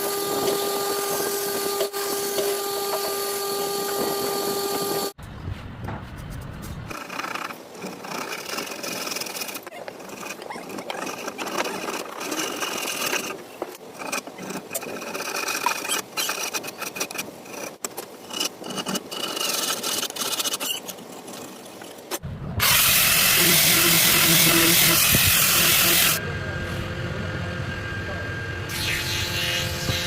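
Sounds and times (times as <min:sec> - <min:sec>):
power tool running: 0:00.0 - 0:05.2, 0:22.6 - 0:30.0.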